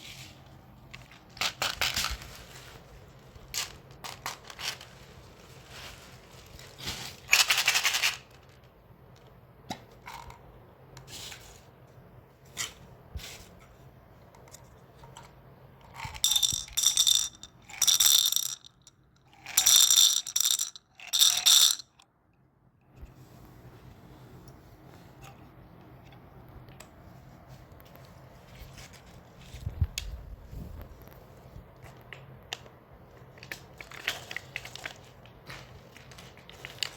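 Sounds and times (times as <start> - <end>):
hard candies rattling in plastic container: 0.9 - 8.6, 15.9 - 22.0.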